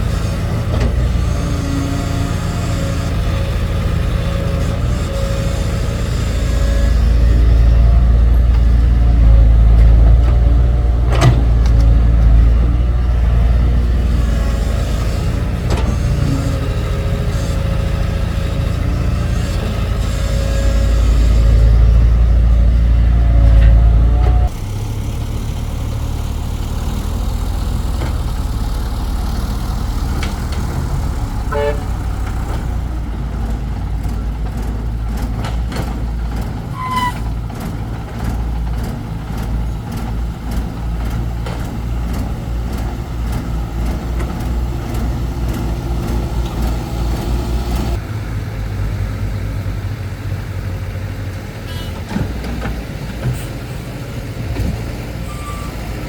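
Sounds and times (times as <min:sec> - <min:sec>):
diesel machinery engine running: 0:00.0 - 0:56.0
short beeps: 0:55.3 - 0:55.8.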